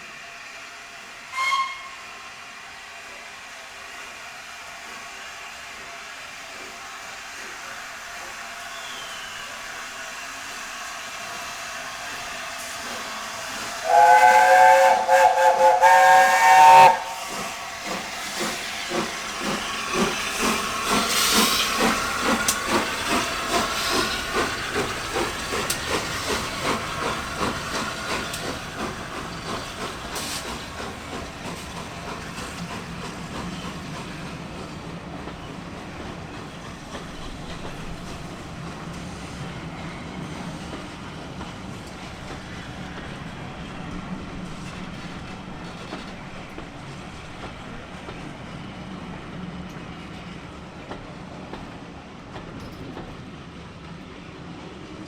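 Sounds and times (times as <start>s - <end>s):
steam locomotive exhaust beats: 0.0s - 53.3s
steam locomotive whistle: 1.2s - 2.3s, 8.6s - 10.0s, 13.0s - 17.5s.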